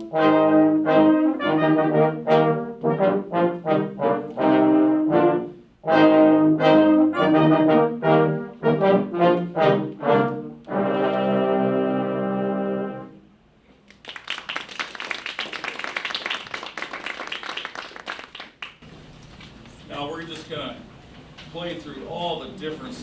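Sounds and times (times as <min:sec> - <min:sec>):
brass ensemble playing: 0:00.0 - 0:13.3
audience clapping: 0:13.8 - 0:18.9.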